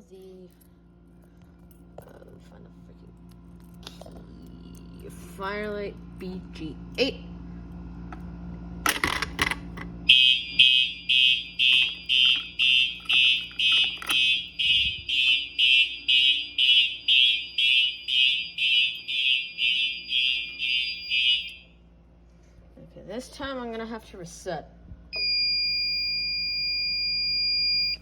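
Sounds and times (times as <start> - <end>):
fire alarm horn pulsing: 10.0 - 21.8, 25.2 - 28.0.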